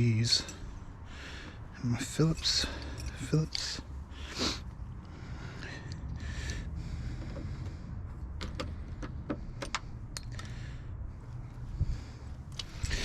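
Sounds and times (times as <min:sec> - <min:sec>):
steady low rumble: 0:00.0 - 0:13.0
metal parts clicking: 0:02.3 - 0:03.8, 0:09.6 - 0:10.5.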